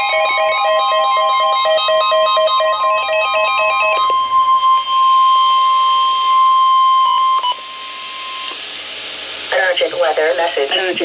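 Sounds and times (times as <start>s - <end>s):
stepping electronic tone melody: 0.0s - 8.6s
steady high-pitched alarm tone: 0.0s - 9.0s.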